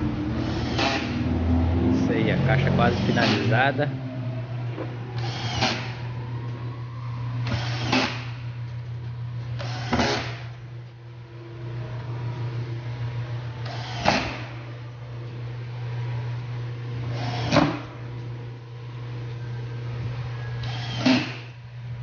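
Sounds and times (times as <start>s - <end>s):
steady low hum: 0.0s - 22.0s
power tool bursts: 20.6s - 21.5s.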